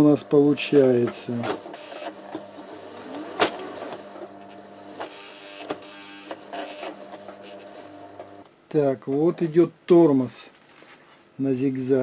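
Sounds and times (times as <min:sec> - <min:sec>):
sewing machine motor humming: 0:00.0 - 0:08.4.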